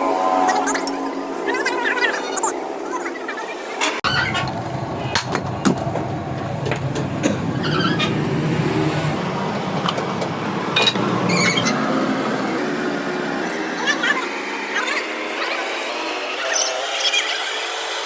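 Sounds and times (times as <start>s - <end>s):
car engine low rumble: 4.6s - 14.2s.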